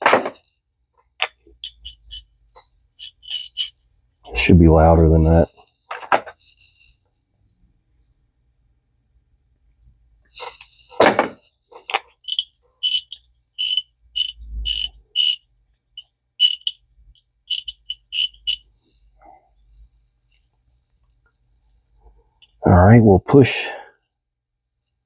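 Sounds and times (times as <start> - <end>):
fishing reel clicker ratcheting: 1.6 - 2.2, 3.0 - 3.7, 12.2 - 15.4, 16.4 - 16.8, 17.5 - 18.6.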